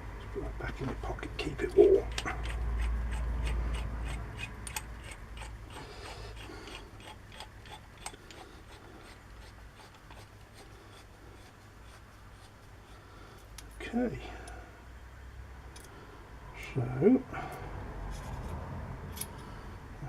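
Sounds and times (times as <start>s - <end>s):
small parts clicking and rubbing: 1.7s - 13.8s.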